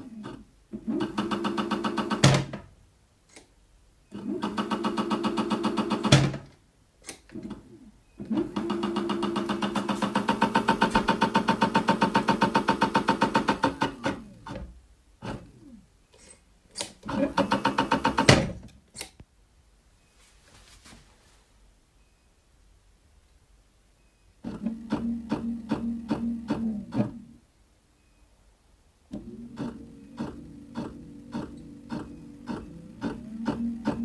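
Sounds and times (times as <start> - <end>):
motor humming with rhythmic knock: 7.3 - 15.8, 24.4 - 27.4, 29.1 - 34.0.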